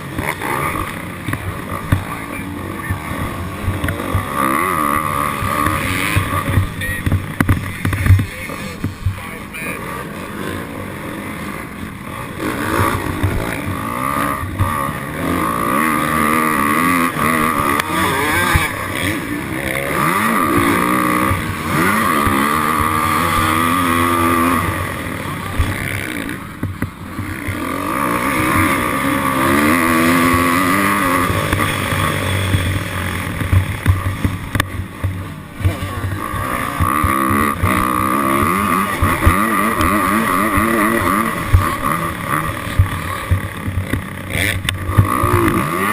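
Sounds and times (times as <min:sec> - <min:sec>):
motorcycle engine revving: 0:00.0 - 0:45.9.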